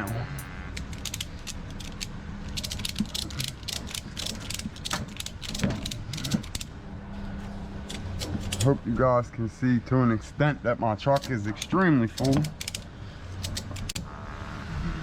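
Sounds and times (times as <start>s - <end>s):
ratchet strap clicking: 0.8s - 6.7s, 11.2s - 14.0s.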